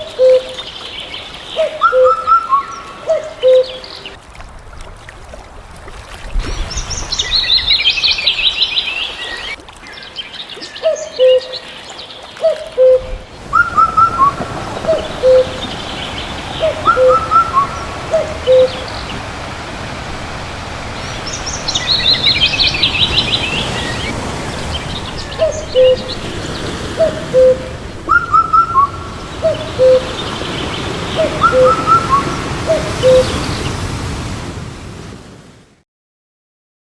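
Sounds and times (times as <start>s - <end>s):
fast twittering birdsong: 0.2s - 4.2s, 6.5s - 19.3s, 20.9s - 33.8s
higher bird call: 12.8s - 19.0s, 27.0s - 30.3s, 31.2s - 33.4s
low whistled bird notes: 12.8s - 19.1s, 24.7s - 26.2s, 27.0s - 33.6s.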